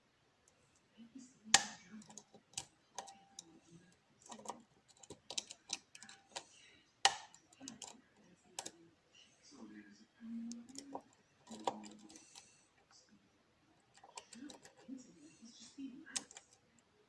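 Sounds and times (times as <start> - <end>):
lock pick clicking on pins: 1.6 - 3.6, 4.2 - 8.0, 10.5 - 12.5, 16.1 - 16.6.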